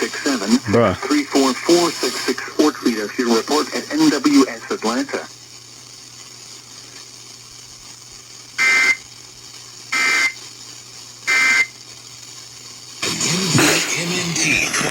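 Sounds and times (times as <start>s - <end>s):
faint steady hum and hiss: 0.0s - 14.9s
short data bursts: 8.5s - 10.5s, 11.2s - 12.0s.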